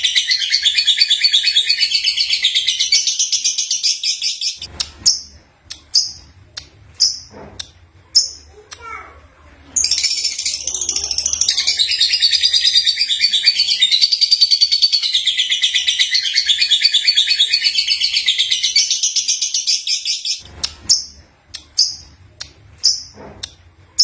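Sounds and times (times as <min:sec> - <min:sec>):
bird chirps: 0:00.0 - 0:06.3, 0:09.8 - 0:22.1.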